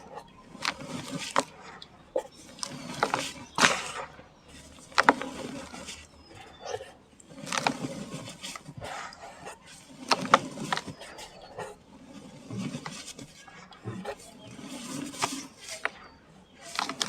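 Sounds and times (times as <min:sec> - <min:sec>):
sand-cement chunks crumbling: 0:02.5 - 0:06.2, 0:14.3 - 0:17.0.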